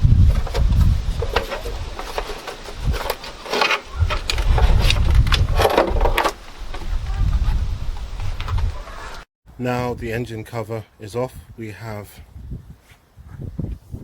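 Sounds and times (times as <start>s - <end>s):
wind rumble on microphone: 0.0s - 3.2s, 3.9s - 9.2s, 12.2s - 14.0s.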